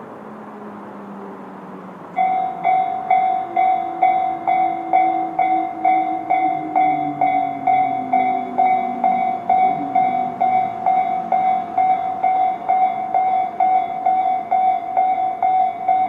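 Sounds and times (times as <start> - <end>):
level crossing electronic bell: 2.2 - 16.0.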